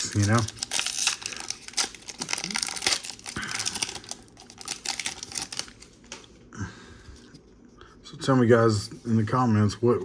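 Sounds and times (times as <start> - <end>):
foil wrapper crinkling: 0.0 - 6.2.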